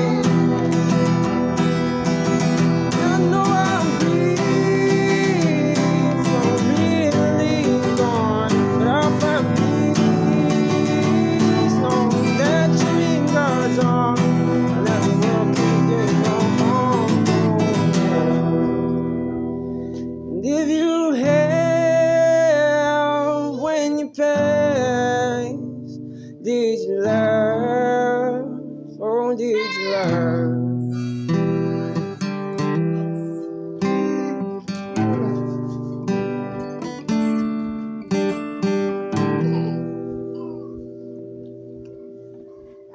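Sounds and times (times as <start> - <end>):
acoustic guitar country song: 0.0 - 42.9.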